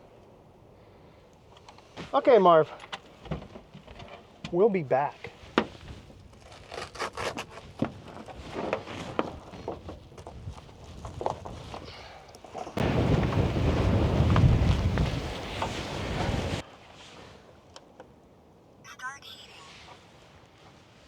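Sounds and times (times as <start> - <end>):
wind gust buffeting microphone: 12.8 - 16.6.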